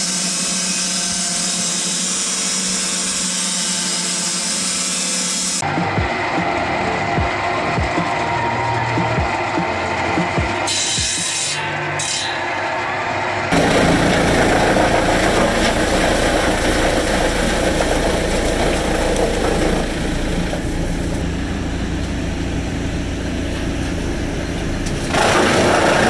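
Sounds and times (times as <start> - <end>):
engine running: 13.5 - 26.0.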